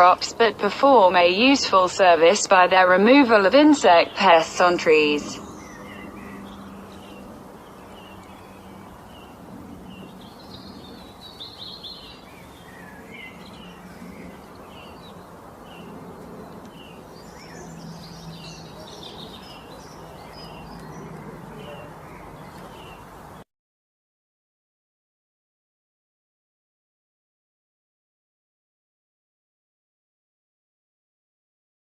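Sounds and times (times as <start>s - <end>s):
steady outdoor background hiss: 0.0s - 23.4s
wild birds chirping: 0.0s - 23.4s.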